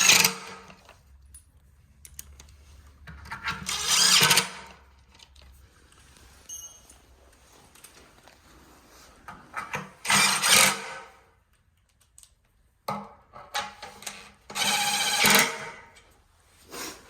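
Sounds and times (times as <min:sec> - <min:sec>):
cordless drill driving bolts: 0:00.0 - 0:00.7, 0:03.4 - 0:04.8, 0:09.6 - 0:11.2, 0:13.6 - 0:16.0.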